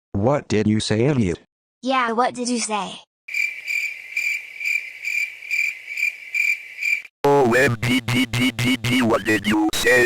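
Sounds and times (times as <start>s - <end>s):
crickets chirping: 3.3s - 7.1s
synthesized voice speaking: 7.3s - 10.0s.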